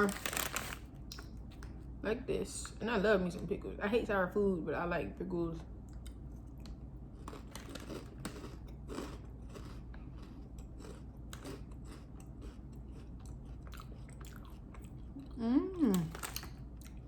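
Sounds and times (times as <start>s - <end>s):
person chewing crunchy chips: 0.0s - 1.4s, 6.0s - 17.0s.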